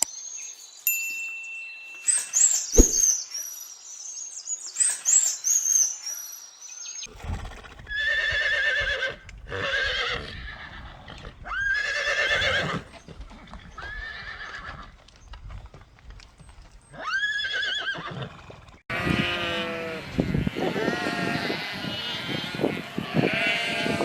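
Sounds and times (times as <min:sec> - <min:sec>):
high-pitched bird chirps: 0:01.6 - 0:03.6
horse whinnying: 0:07.1 - 0:15.0, 0:16.9 - 0:24.0.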